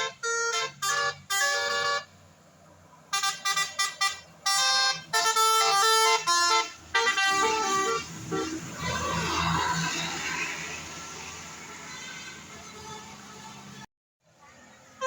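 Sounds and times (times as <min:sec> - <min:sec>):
bus musical horn playing tune: 0:00.0 - 0:02.2, 0:03.1 - 0:09.6.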